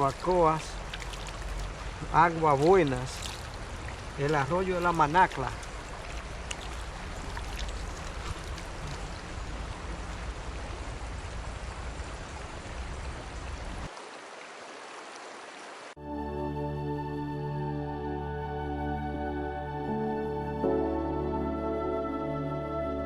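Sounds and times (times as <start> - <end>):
water rushing over rocks: 0.0 - 16.0
soft instrumental music: 16.0 - 23.0.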